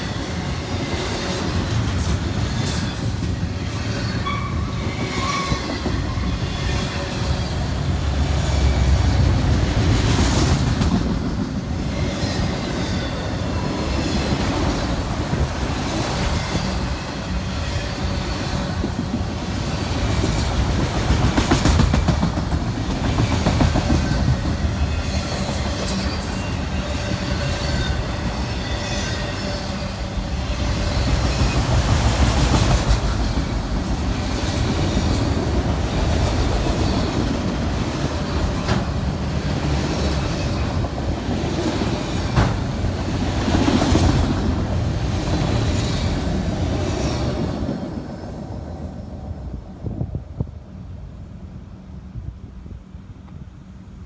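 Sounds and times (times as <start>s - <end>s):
train wheels clicking over rail joints: 0.0s - 47.4s
train rumble: 0.0s - 54.0s
wheel squeal: 3.8s - 7.1s.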